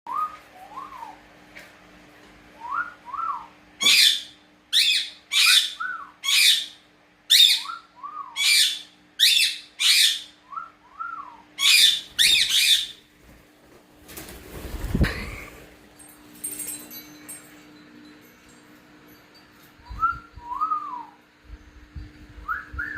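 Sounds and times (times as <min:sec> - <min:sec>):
parrots screeching: 0:03.8 - 0:07.8, 0:08.4 - 0:10.3, 0:11.6 - 0:13.0
soft rising and falling whistles: 0:19.8 - 0:21.3, 0:22.0 - 0:22.9.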